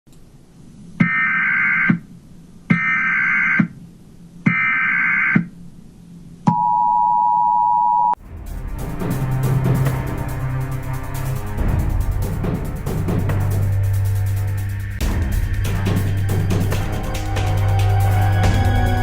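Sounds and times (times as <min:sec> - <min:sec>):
two-tone attention signal: 0:06.5 - 0:08.2
news theme music: 0:08.2 - 0:19.0.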